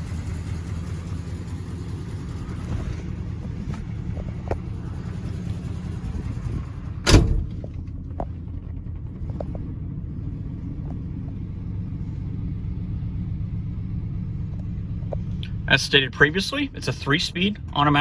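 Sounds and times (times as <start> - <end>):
car engine idling: 0.0 - 18.0
loud thump: 7.0 - 7.8.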